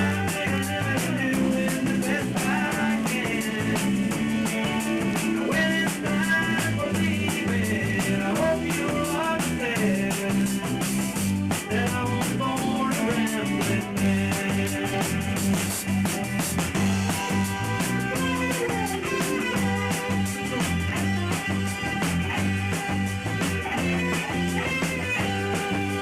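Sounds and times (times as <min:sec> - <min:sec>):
bass guitar: 0:00.0 - 0:26.0
drum kit beat: 0:00.0 - 0:26.0
melodic lead line: 0:13.8 - 0:26.0.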